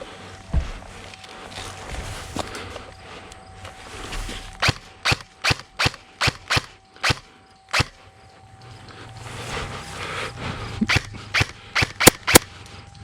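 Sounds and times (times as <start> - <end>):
airsoft gun shots: 4.6 - 8.0, 10.9 - 12.5.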